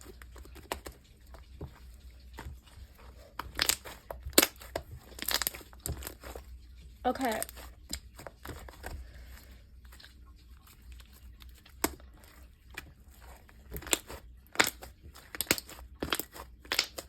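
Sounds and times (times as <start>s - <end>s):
slime dough clicking and popping: 3.4s - 6.3s, 13.6s - 17.0s.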